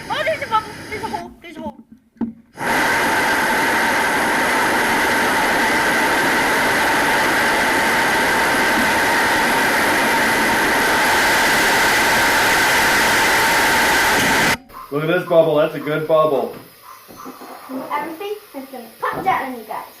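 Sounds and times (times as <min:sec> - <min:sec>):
hiss: 0:00.0 - 0:01.3, 0:02.6 - 0:14.6, 0:15.9 - 0:20.0
motor whirring and whining: 0:02.6 - 0:14.6.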